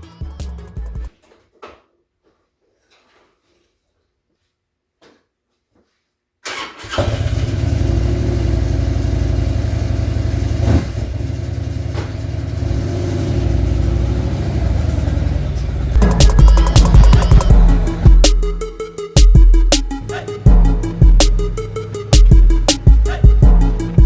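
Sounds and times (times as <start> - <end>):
vehicle engine starting and idling: 6.5 - 18.2.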